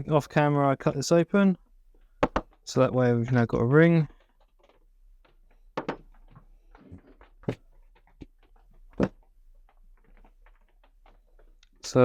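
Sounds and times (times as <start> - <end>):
wooden pieces knocking on workbench: 2.2 - 3.4, 4.1 - 11.5.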